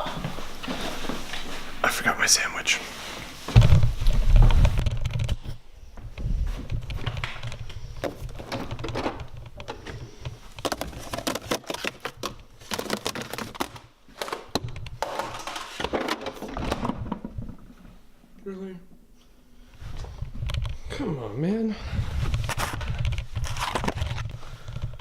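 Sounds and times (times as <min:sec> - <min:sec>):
objects clicking and knocking: 0:06.2 - 0:17.6.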